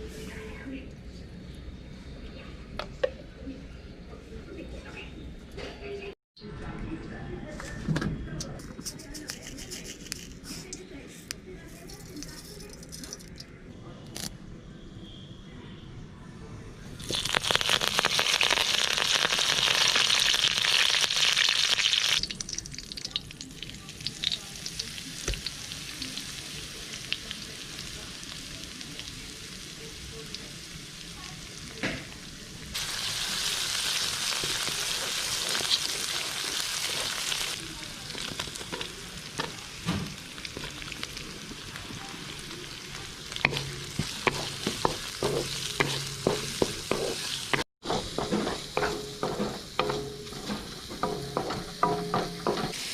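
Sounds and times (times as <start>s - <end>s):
stirring clicks and taps: 8.4s - 13.5s, 43.4s - 52.8s
food sizzling in hot oil: 17.0s - 52.9s.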